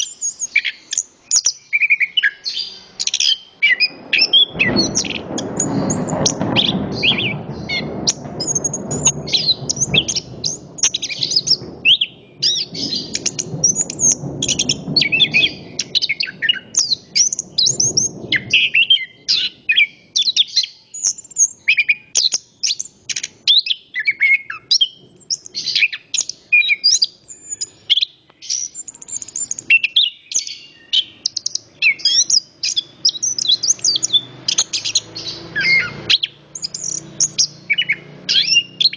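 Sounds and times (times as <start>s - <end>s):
thrush singing: 30.6s - 38.9s.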